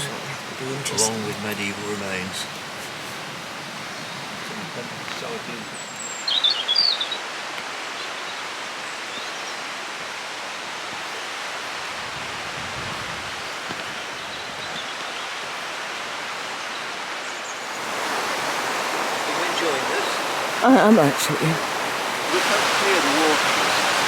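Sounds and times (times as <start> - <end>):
river rushing over rocks: 7.2 - 24.0.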